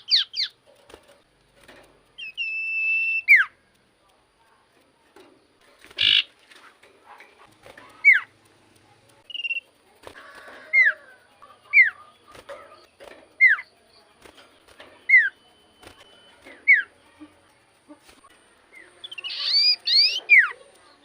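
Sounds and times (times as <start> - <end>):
buzzy bird trill: 0.0 - 0.7, 2.1 - 3.7, 5.8 - 6.7, 7.7 - 8.5, 9.2 - 21.0
bird whistles: 2.2 - 3.5, 9.3 - 9.6, 18.7 - 20.5.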